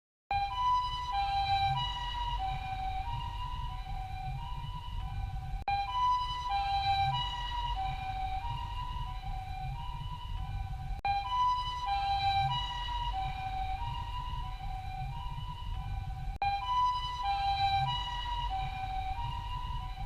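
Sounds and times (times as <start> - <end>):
low rumble: 0.3 - 20.0
two-tone ambulance siren: 0.3 - 20.0.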